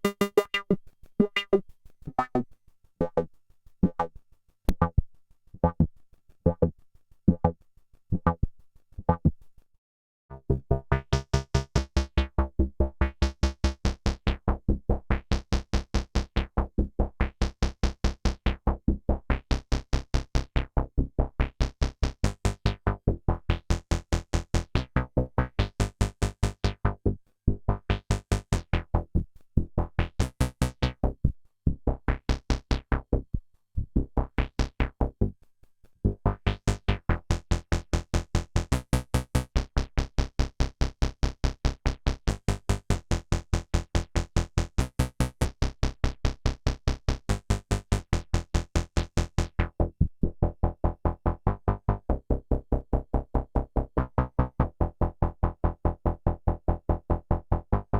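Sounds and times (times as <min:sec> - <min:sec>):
synthesizer staccato notes: 0:00.0 - 0:02.4.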